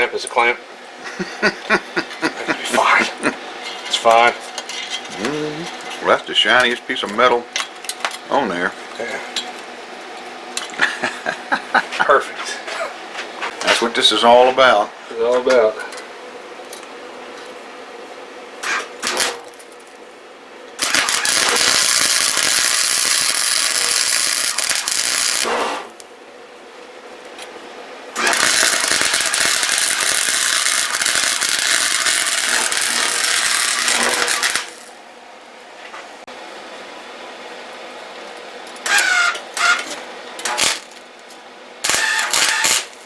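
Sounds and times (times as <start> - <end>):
arc welding crackle: 18.6 - 20.0, 20.8 - 26.1, 28.2 - 35.0, 38.7 - 43.0.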